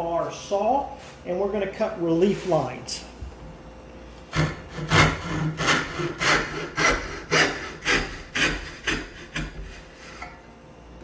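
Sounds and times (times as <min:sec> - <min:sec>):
hand saw cutting wood: 0:04.3 - 0:10.4.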